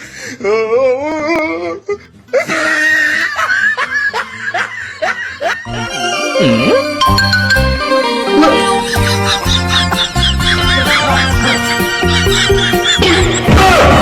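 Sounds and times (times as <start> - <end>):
person laughing hard: 2.4 - 5.7, 8.4 - 14.0
music: 5.6 - 14.0.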